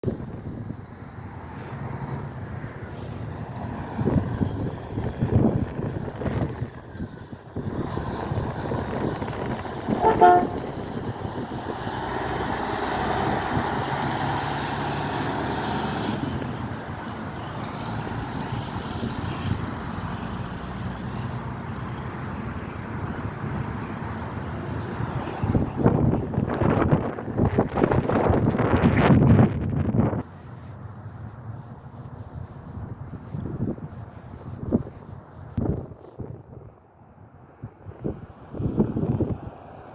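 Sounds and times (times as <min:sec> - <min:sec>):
road traffic: 0:00.0 - 0:39.9
truck passing: 0:00.0 - 0:39.9
horn blast: 0:09.9 - 0:10.7.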